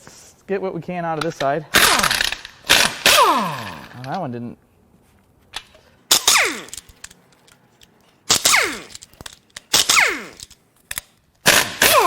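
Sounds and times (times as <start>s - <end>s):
impact wrench hammering: 6.1s - 7.2s, 8.3s - 10.6s.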